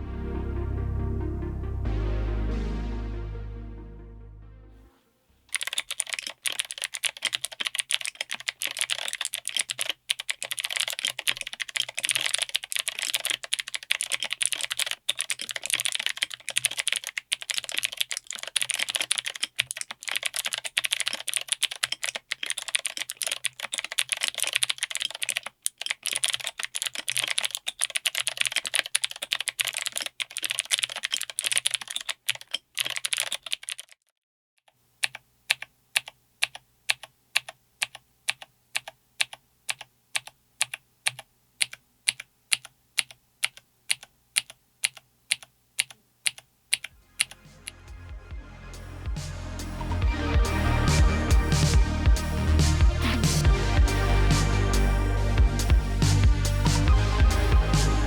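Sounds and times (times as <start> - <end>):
typing on mechanical keyboard: 5.5 - 34.1, 35.0 - 47.4.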